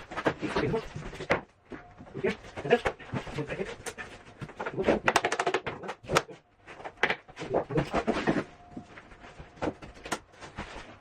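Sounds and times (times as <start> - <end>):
knocks tapping floor plank: 4.4 - 6.3.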